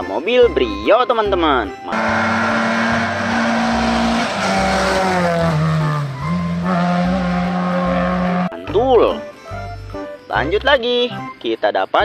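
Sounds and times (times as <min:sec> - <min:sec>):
racing car engine and tyres: 0:01.9 - 0:08.5.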